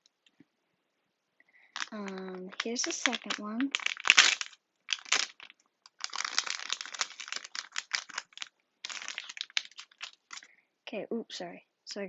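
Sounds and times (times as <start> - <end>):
plastic packaging crinkling: 1.7 - 10.5.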